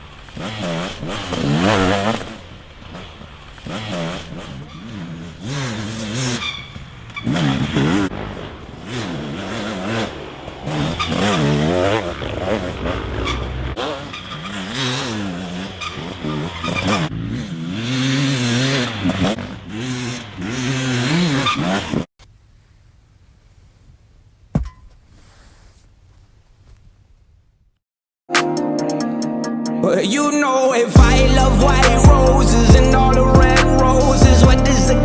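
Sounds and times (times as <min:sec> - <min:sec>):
vehicle engine revving: 0:00.0 - 0:22.1, 0:31.0 - 0:35.0.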